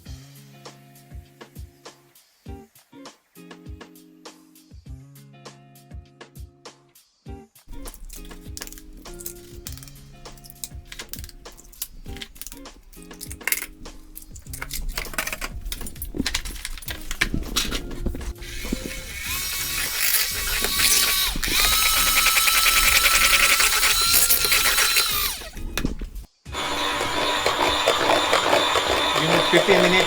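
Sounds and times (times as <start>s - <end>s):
electric mixer motor whine: 7.7s - 30.0s
rattling and clicking: 7.7s - 30.0s.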